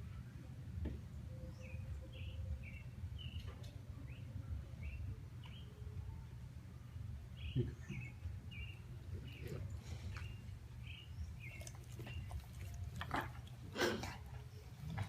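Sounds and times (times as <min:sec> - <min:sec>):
small birds chirping: 0:00.8 - 0:06.2, 0:07.2 - 0:13.6.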